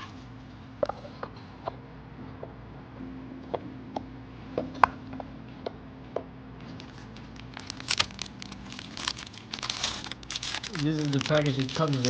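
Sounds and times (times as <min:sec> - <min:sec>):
faint steady hum: 0:00.0 - 0:12.0
packaging crinkling: 0:06.7 - 0:12.0.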